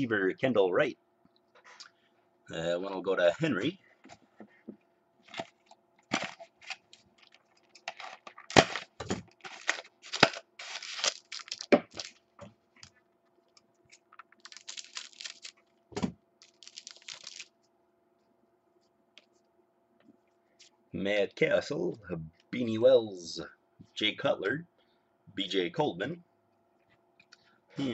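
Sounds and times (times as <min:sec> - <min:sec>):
faint steady hum: 0:00.0 - 0:27.9
cards being handled: 0:05.3 - 0:12.2, 0:16.4 - 0:17.6
foil card pack tearing: 0:06.1 - 0:12.2, 0:14.4 - 0:15.6, 0:16.4 - 0:17.5.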